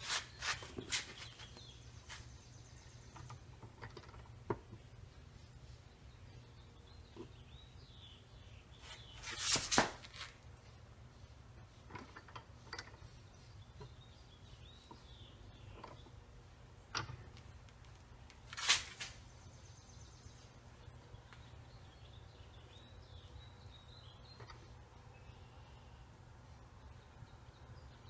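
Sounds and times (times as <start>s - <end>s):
metal clicks and knocks: 3.1s - 4.8s, 11.9s - 13.1s, 16.9s - 17.9s
faint bird chirps: 19.4s - 26.2s.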